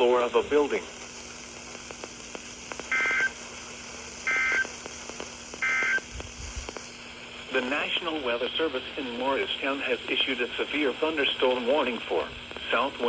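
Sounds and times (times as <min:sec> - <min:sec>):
steady low hum: 0:00.0 - 0:13.0
faint clicks: 0:01.5 - 0:03.4
two-tone buzzing data bursts: 0:02.0 - 0:03.4, 0:04.2 - 0:06.9.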